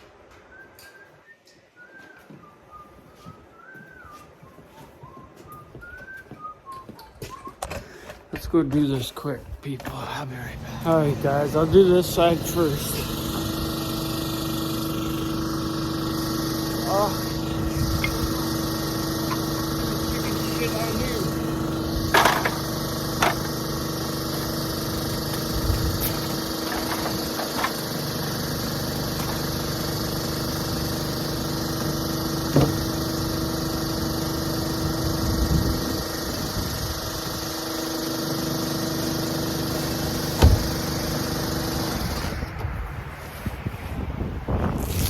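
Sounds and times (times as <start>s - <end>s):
machine humming: 10.0s - 42.5s.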